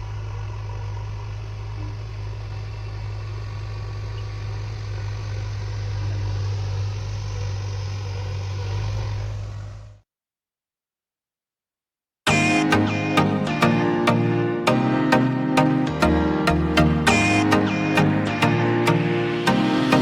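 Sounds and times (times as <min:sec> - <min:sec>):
diesel engine droning: 0:00.0 - 0:10.0.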